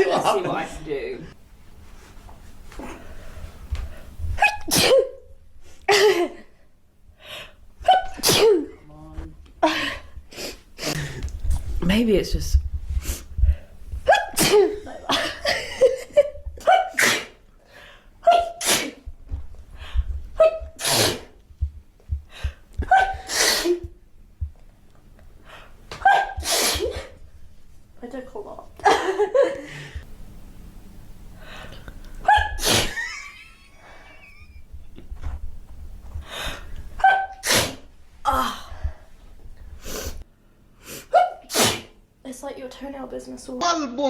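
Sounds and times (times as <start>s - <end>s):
person sneezing: 4.4s - 5.2s, 7.9s - 8.8s, 16.7s - 17.4s, 18.3s - 19.1s, 20.4s - 21.4s, 22.9s - 23.9s, 26.1s - 27.2s, 32.3s - 33.1s, 37.0s - 38.4s, 40.9s - 42.0s.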